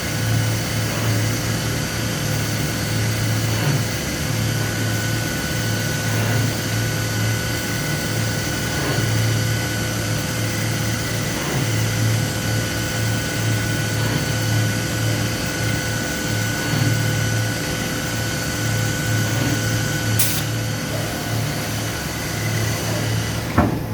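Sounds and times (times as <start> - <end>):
cnc machine humming: 0.0 - 23.9
short hiss: 20.2 - 20.6.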